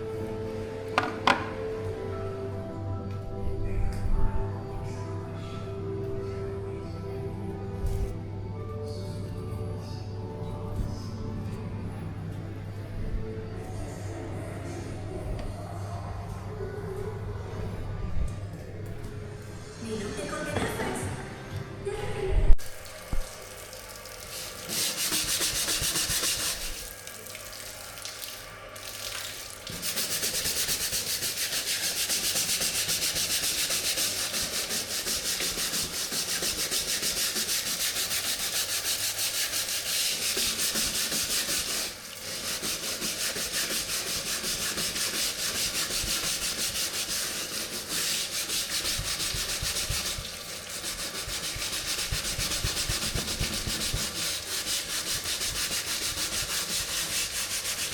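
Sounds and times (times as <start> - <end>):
scrubbing on a hard surface: 23.3 - 27.6, 28.2 - 57.9.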